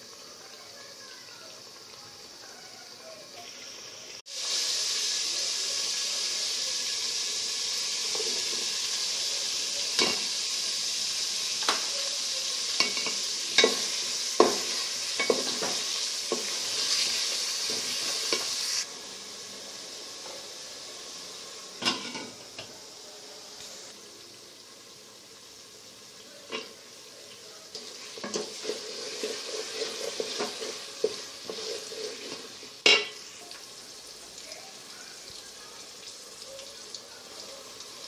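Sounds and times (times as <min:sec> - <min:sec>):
food sizzling in hot oil: 0:00.0 - 0:38.0
utensil scraping a pan: 0:27.8 - 0:33.3.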